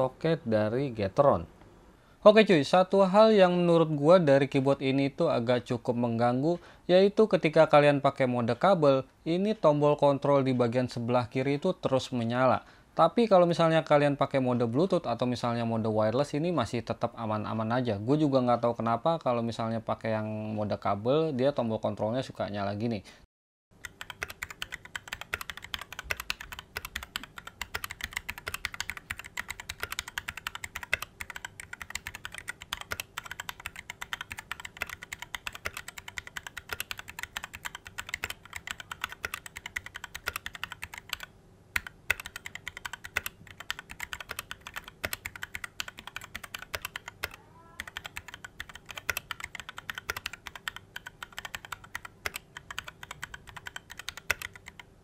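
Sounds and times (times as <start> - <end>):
mechanical keyboard typing: 23.8 - 54.9.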